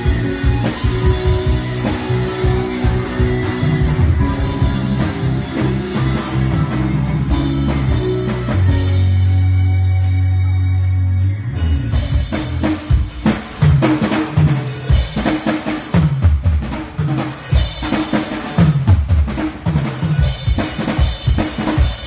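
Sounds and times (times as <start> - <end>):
bass line: 0.0 - 15.3
drum kit: 0.0 - 22.0
live band playing upbeat groove: 0.0 - 22.0.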